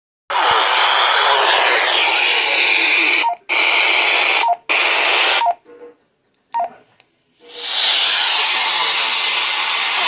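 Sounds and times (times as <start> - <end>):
steady radio hiss: 0.3 - 6.0, 6.6 - 10.0
emergency alert data burst: 1.1 - 5.6.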